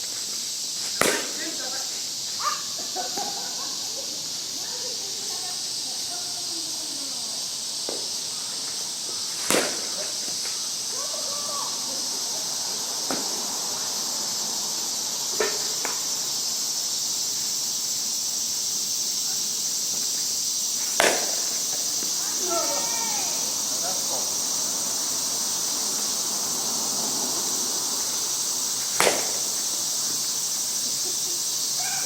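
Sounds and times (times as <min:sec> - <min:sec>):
insects chirping: 0:00.0 - 0:32.0
softball bat hitting ball: 0:01.0 - 0:01.4, 0:09.4 - 0:10.1, 0:21.0 - 0:22.5, 0:28.9 - 0:29.6.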